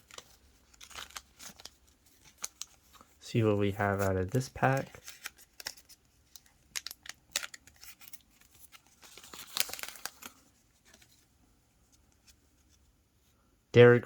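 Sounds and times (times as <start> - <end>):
plastic wrapper tearing: 0.0 - 3.1, 4.0 - 11.1.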